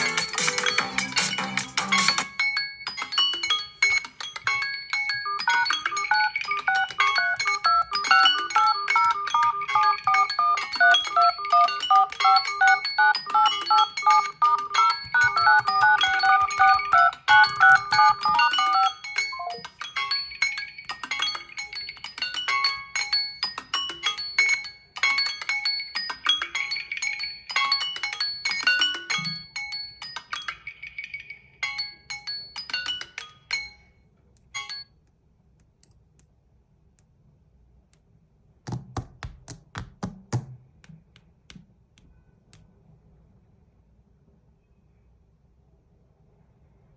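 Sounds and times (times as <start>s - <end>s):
phone alert chiming melody: 0.0s - 25.4s
knocks and clicks: 13.4s - 19.8s, 38.6s - 42.6s.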